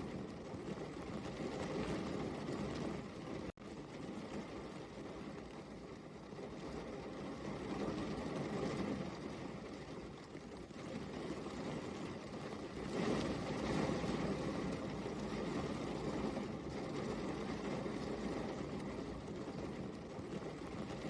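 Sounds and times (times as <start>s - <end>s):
rain falling steadily: 0.0s - 21.0s.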